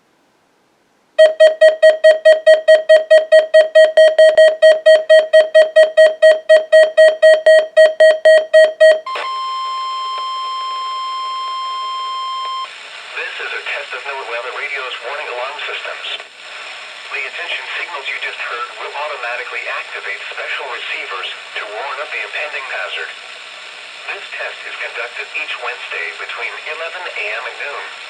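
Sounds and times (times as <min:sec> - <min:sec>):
steady warning alarm tone: 0:01.2 - 0:12.7.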